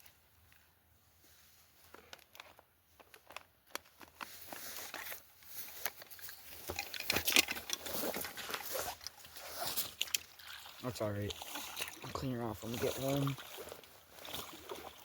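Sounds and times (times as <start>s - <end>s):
crinkly packaging rustling: 1.8s - 10.2s
handling clicks and knocks: 1.9s - 9.1s.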